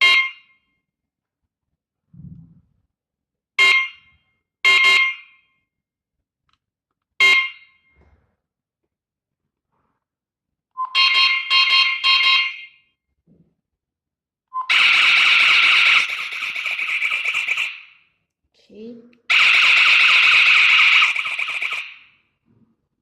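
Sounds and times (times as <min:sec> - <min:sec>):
siren electronic chirps: 0:10.8 - 0:12.7, 0:14.5 - 0:18.1, 0:19.3 - 0:22.2.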